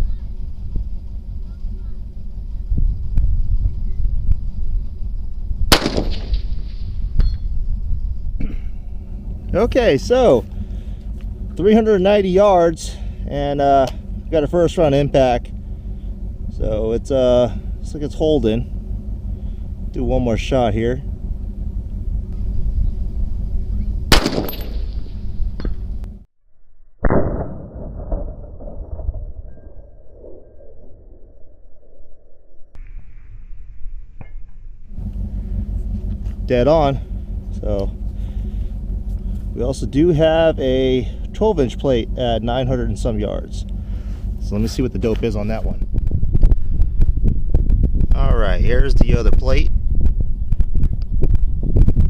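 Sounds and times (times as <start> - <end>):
low wind rumble: 0.0 - 26.3, 27.1 - 52.0
rifle shot: 5.7 - 7.0, 24.1 - 25.2, 27.0 - 29.1
bullet pinging steel target: 5.7 - 7.4, 24.1 - 25.8.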